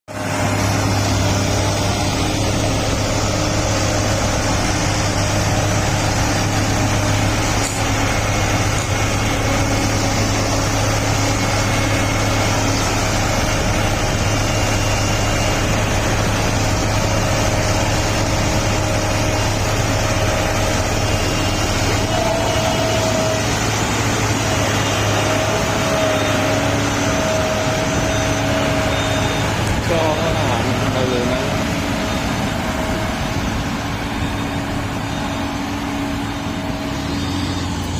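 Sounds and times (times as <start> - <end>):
bulldozer diesel engine drone: 0.1 - 37.9.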